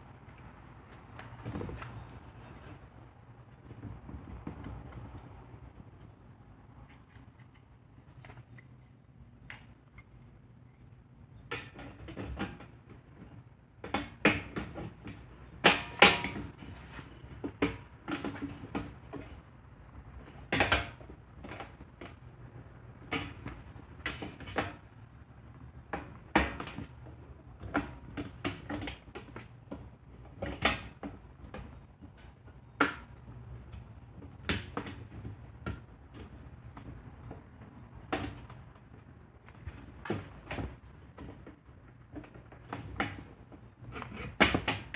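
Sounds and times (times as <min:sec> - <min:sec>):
plastic fan housing knocks and rubbing: 0:11.4 - 0:19.4, 0:25.8 - 0:44.9.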